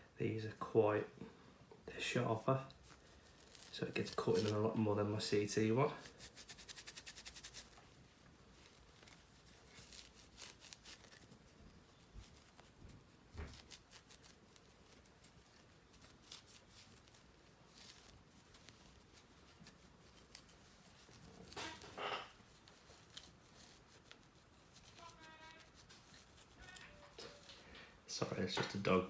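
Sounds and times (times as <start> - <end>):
cloth rubbing metal: 13.5 - 27.6.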